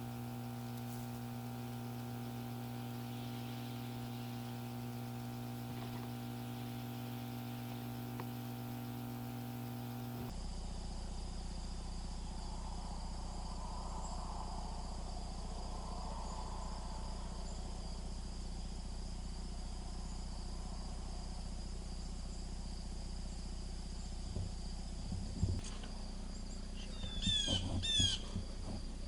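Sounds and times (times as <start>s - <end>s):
crickets chirping: 0.0s - 10.3s.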